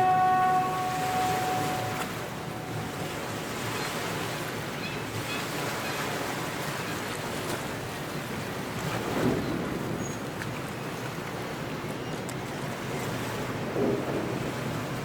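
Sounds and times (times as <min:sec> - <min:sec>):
waves and water washing: 0:00.0 - 0:15.0.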